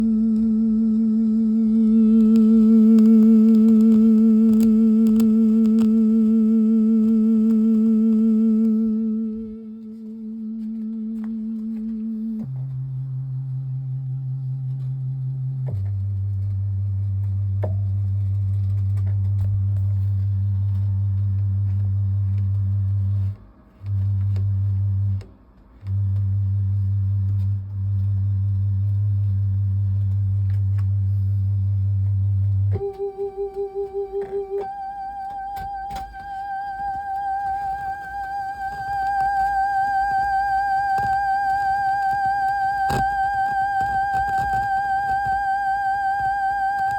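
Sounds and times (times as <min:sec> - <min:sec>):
faint clicks and ticks: 0:00.0 - 0:12.9, 0:15.6 - 0:46.9
fluctuating low rumble: 0:00.0 - 0:23.4
low synthesizer note: 0:00.0 - 0:46.9
faint clicks: 0:01.8 - 0:12.8.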